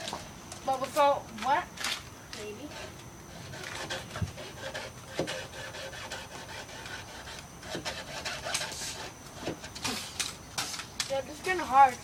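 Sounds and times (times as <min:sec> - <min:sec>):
handsaw rasping through wood: 0:02.7 - 0:09.6.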